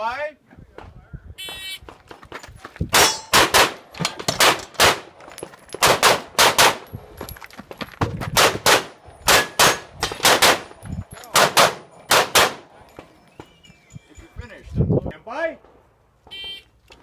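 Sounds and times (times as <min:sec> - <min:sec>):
handgun shots: 0:05.8 - 0:06.8, 0:08.4 - 0:10.7, 0:11.4 - 0:12.6.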